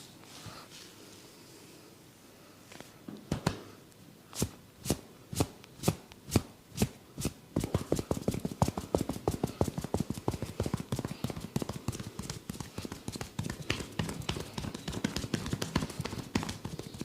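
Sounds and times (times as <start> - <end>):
percussive massage strikes: 7.2 - 17.0.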